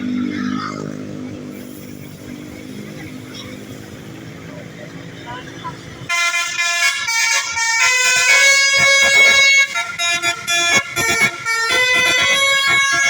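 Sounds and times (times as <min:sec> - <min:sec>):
musical air horn tune: 0:06.1 - 0:13.0.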